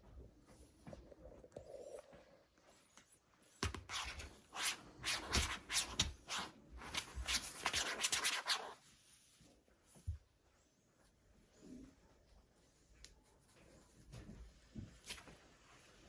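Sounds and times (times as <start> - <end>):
rubbing and scratching: 3.6 - 9.6, 12.8 - 16.0.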